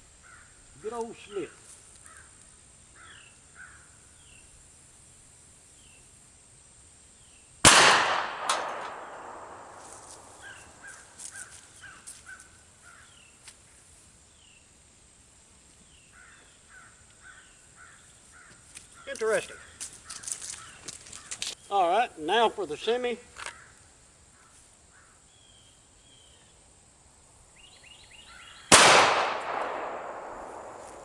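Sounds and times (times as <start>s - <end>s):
revolver shot: 7.7s - 9.7s.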